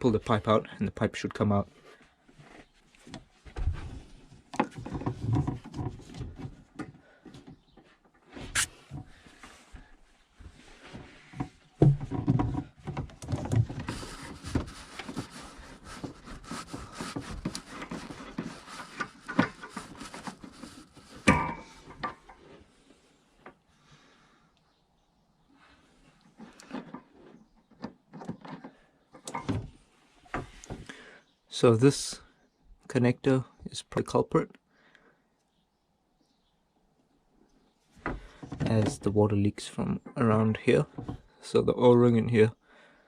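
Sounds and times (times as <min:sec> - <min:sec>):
rustling plastic pipe handling: 0:00.0 - 0:24.4, 0:25.6 - 0:31.2, 0:37.8 - 0:39.4, 0:40.0 - 0:41.6.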